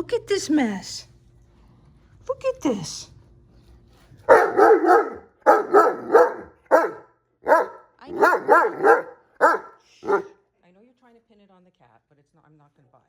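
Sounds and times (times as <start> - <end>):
dog barking: 4.3 - 10.4.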